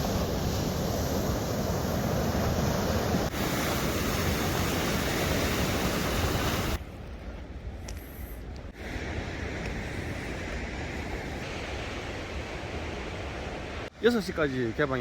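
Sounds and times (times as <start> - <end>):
sea surf washing in: 0.0 - 6.8, 8.7 - 15.0.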